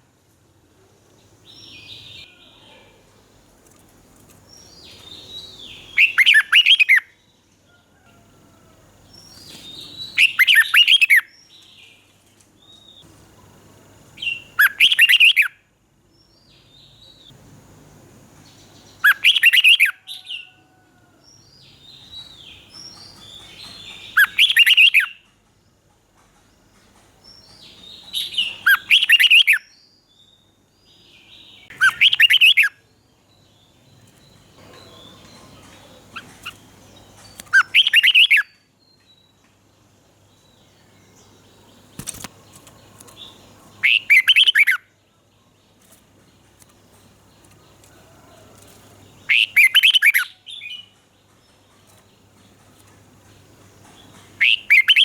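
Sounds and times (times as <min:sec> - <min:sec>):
bird singing warbled phrases: 0:04.4 - 0:07.3, 0:09.2 - 0:13.1, 0:14.2 - 0:15.6, 0:18.4 - 0:20.5, 0:21.4 - 0:25.3, 0:27.4 - 0:39.4, 0:40.3 - 0:55.0
soft bird chirps: 0:18.4 - 0:25.4, 0:26.3 - 0:39.6, 0:40.3 - 0:55.0.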